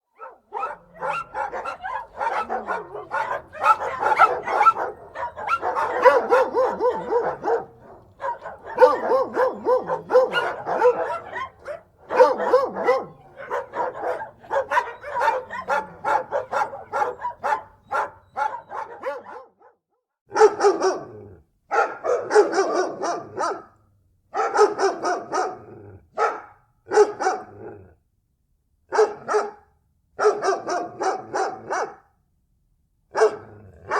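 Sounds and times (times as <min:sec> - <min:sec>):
dogs barking angrily: 0:00.1 - 0:23.8, 0:24.4 - 0:27.8, 0:28.9 - 0:29.6, 0:30.2 - 0:32.1, 0:33.1 - 0:33.9.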